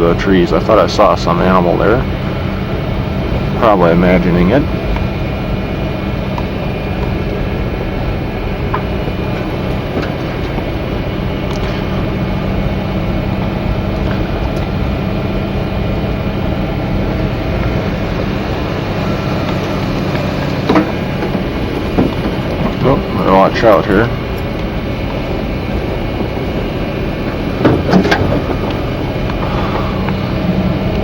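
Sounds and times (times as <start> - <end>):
engine and road drone: 0.0 - 31.0
light rattles and clicks: 19.4 - 30.2.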